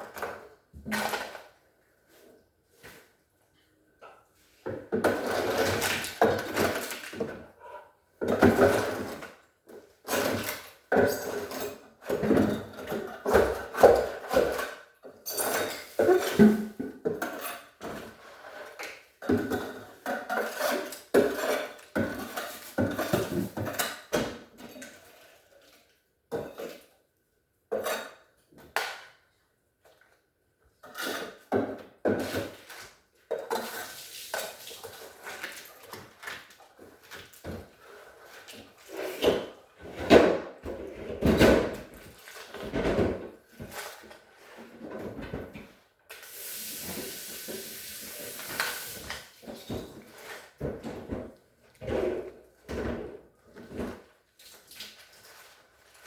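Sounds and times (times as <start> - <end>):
ice and plastic parts clattering: 4.7 - 7.5, 8.2 - 25.5.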